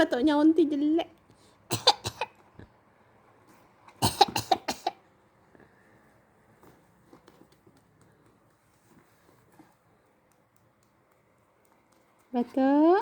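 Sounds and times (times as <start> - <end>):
person coughing: 1.7 - 2.4, 4.0 - 5.0.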